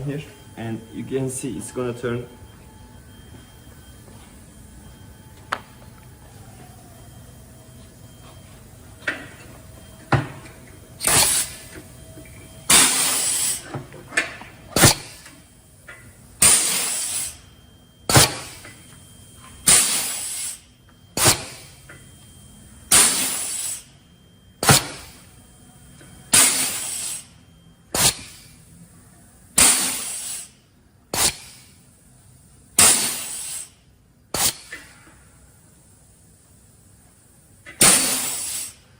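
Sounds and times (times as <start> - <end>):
compressed air hiss: 11.0 - 11.6, 12.7 - 13.6, 16.4 - 17.4, 19.7 - 20.6, 22.9 - 23.9, 26.3 - 27.3, 29.6 - 30.6, 32.8 - 33.8, 34.4 - 34.7, 37.8 - 38.9.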